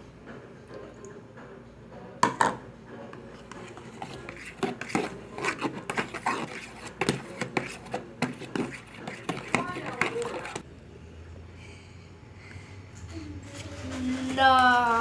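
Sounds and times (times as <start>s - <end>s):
utensil clinking and scraping bowl: 2.4s - 10.6s.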